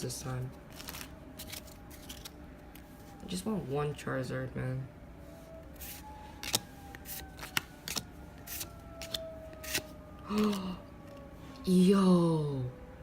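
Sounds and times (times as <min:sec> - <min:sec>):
cards snapping and rustling: 0:00.7 - 0:02.9, 0:05.8 - 0:11.2.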